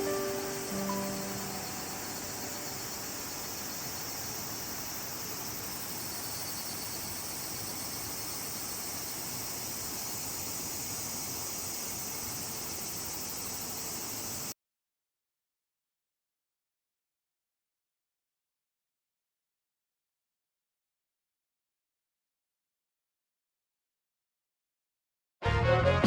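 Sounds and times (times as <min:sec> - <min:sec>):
music: 0:00.0 - 0:03.1, 0:25.4 - 0:26.0
rushing river hiss: 0:00.0 - 0:14.5
high-pitched insect chorus: 0:00.0 - 0:14.6.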